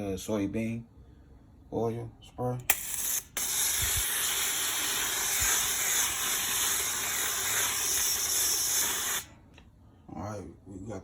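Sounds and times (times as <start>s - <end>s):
aerosol spray hissing: 3.1s - 9.3s.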